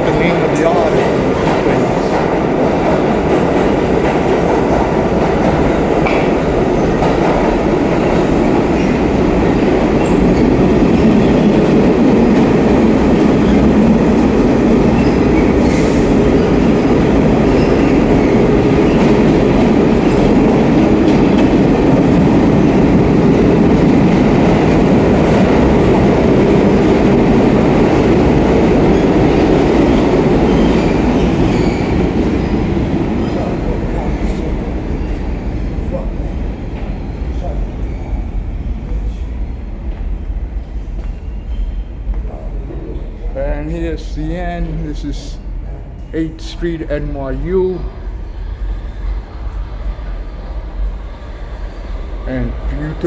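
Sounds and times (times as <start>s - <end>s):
train wheels on rails: 0.0s - 53.0s.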